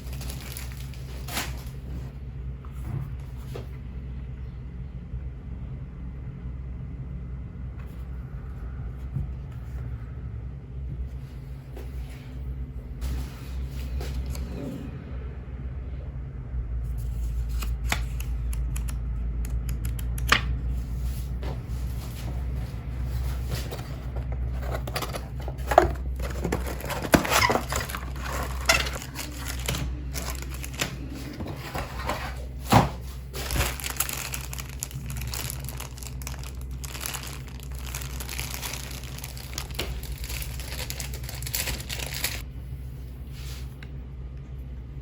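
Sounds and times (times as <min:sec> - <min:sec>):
plastic packaging crinkling: 0:00.0 - 0:01.9, 0:23.3 - 0:32.4, 0:33.0 - 0:42.4.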